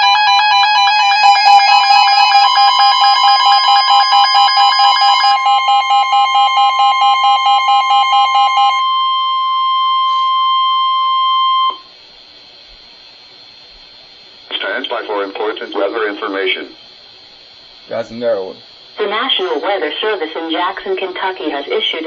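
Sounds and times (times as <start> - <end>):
pulsing two-pitch beep: 0.0 - 11.9
steady alarm tone: 0.0 - 12.5, 14.0 - 22.0.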